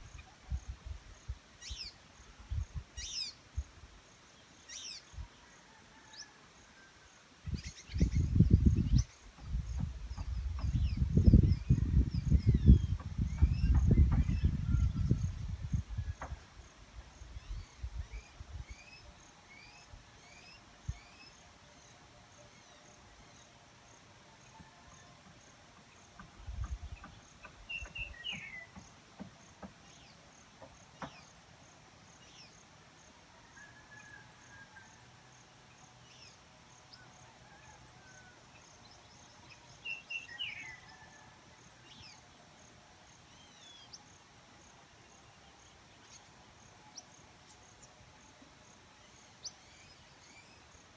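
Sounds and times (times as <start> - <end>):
low rumbles on microphone: 7.5 - 16.3.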